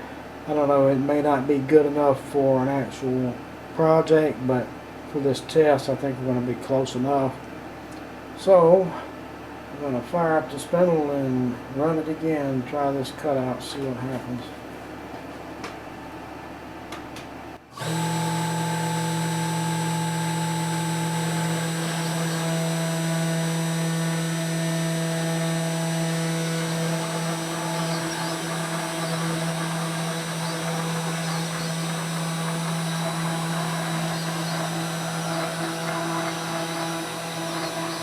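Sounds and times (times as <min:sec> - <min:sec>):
cnc router spindle whine: 0:17.8 - 0:38.0.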